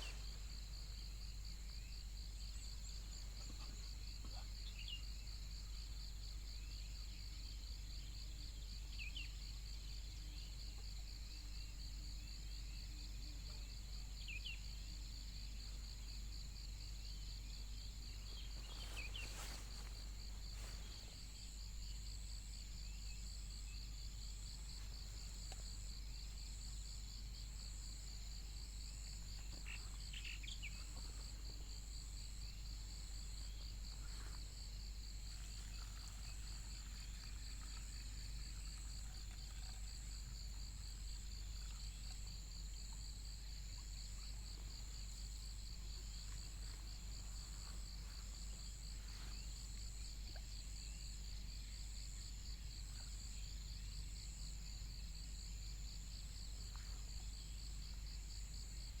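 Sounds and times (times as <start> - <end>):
insects chirping in chorus: 0.0 - 59.0.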